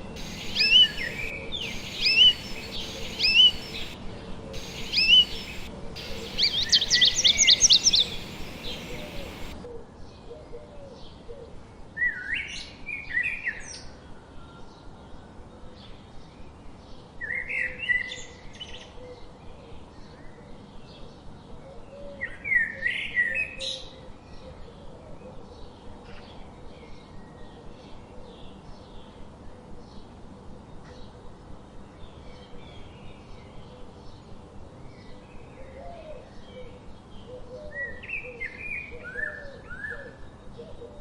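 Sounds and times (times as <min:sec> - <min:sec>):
faint bird chirps: 0:00.0 - 0:04.0, 0:04.6 - 0:09.6
songbird singing: 0:00.0 - 0:04.0, 0:04.6 - 0:09.6.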